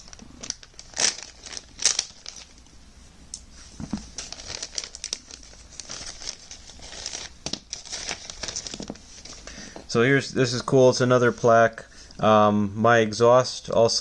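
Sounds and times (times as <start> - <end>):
packaging crinkling and rustling: 0.0 - 2.7, 3.8 - 9.6.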